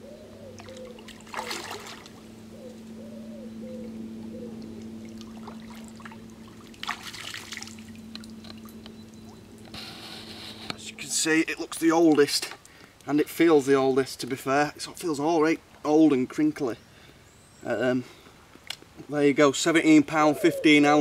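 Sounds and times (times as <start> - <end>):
low hum: 0.0 - 13.6
water trickling and splashing: 0.6 - 2.2, 4.6 - 9.6.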